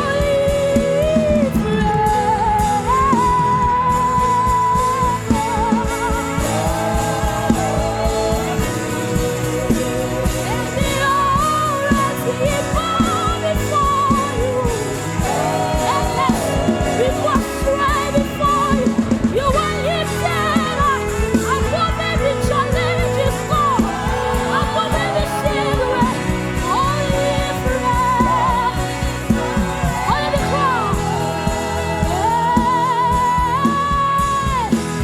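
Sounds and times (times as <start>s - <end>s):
gospel band playing: 0.0s - 35.0s
lead singer with vibrato: 0.0s - 35.0s.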